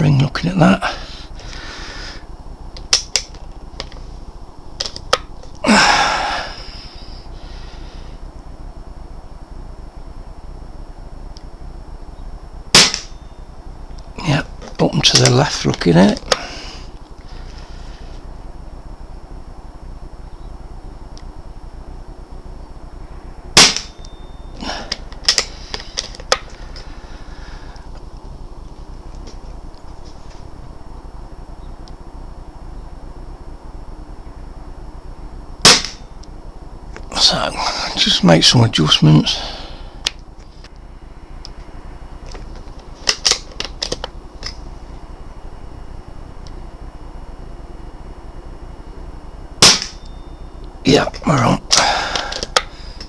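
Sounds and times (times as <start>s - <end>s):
sharp clicks: 2.8s - 3.9s
air rifle shot crack: 12.7s - 13.2s, 23.6s - 24.1s, 35.6s - 36.1s, 49.6s - 50.0s.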